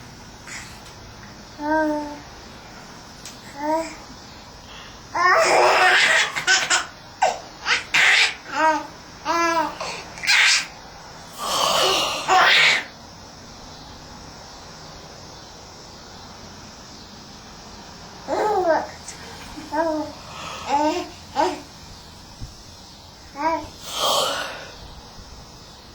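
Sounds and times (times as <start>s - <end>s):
baby laughing: 5.2s - 10.7s, 18.3s - 21.7s.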